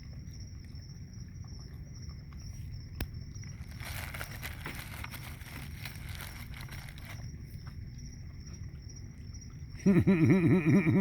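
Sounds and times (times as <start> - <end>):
crickets trilling: 0.0 - 11.0
crackly rustling: 2.4 - 9.2.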